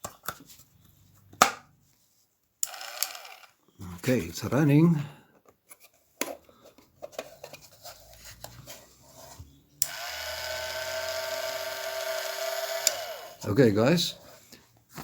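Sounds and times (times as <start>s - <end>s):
rotisserie motor electric whine: 9.8s - 13.4s.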